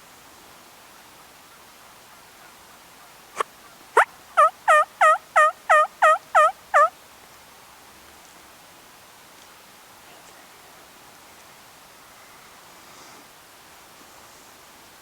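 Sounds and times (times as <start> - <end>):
turkey yelps: 3.4 - 6.9.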